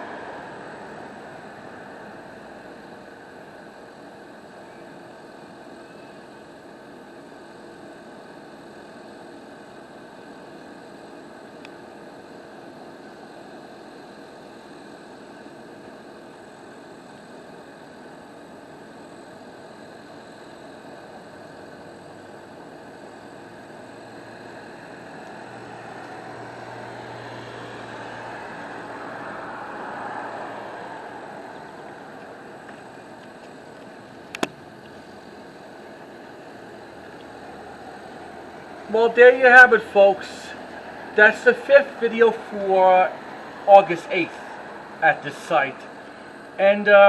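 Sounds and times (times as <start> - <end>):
vehicle passing: 0.0 - 2.1, 25.4 - 32.4, 39.7 - 46.0
background traffic hum: 0.0 - 47.0
sharp click: 34.3 - 34.6.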